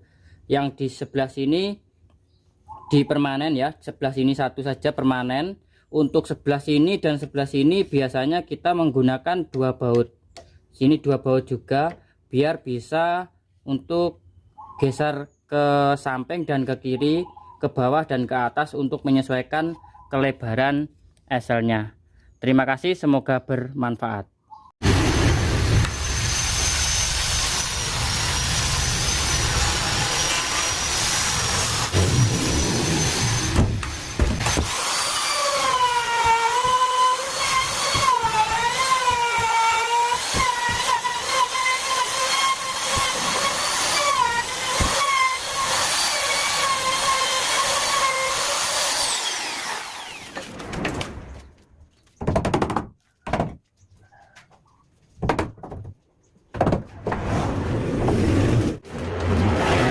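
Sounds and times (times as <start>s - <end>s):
trimmer router whining: 24.9s - 50.5s.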